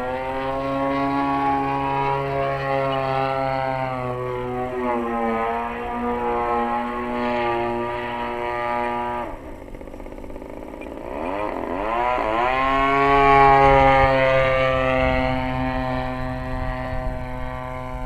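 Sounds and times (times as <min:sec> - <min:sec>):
model plane engine revving: 0:00.0 - 0:18.0.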